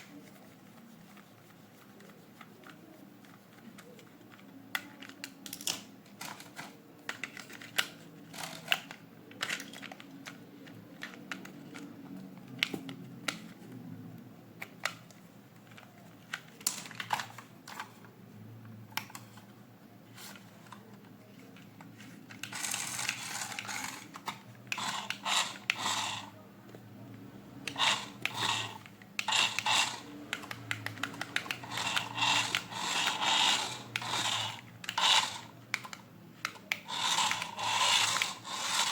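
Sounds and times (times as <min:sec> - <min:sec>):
plastic toy clicks and taps: 0:27.7 - 0:38.9.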